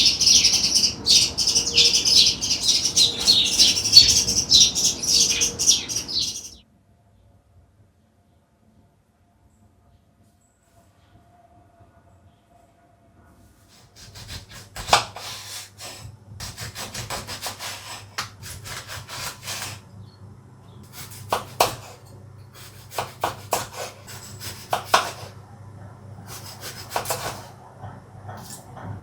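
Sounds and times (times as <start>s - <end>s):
grating by hand: 13.7s - 19.9s, 20.8s - 25.4s, 26.2s - 27.6s.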